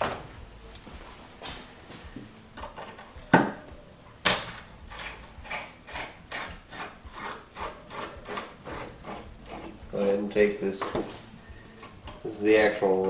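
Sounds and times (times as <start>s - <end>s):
hand scraping strokes: 3.1s - 13.0s.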